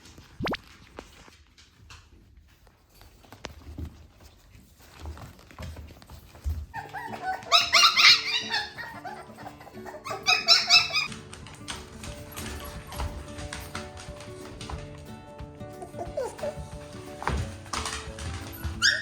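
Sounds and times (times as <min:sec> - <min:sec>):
puppies yipping and squealing: 0:04.9 - 0:14.8, 0:15.8 - 0:19.0
background music: 0:06.8 - 0:19.0.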